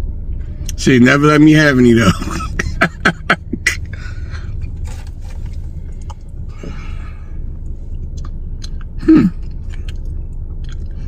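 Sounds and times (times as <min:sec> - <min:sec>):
steady low hum: 0:00.0 - 0:11.0
person chewing: 0:04.6 - 0:11.0
person humming mmm: 0:09.0 - 0:09.4.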